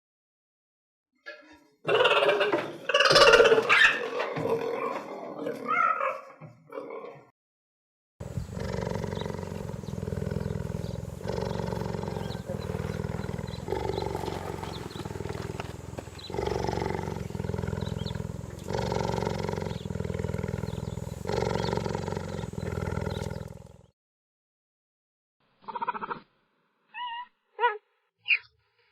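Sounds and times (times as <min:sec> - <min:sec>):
cheetah purring: 0:08.2 - 0:24.0.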